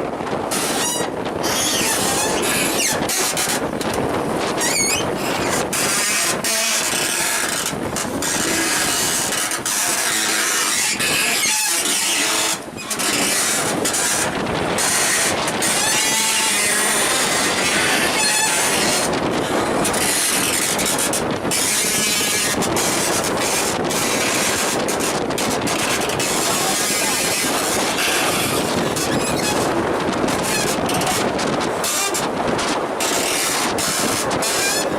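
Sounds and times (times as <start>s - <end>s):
wind buffeting microphone: 0.0s - 34.9s
brief squeaks: 4.6s - 5.6s.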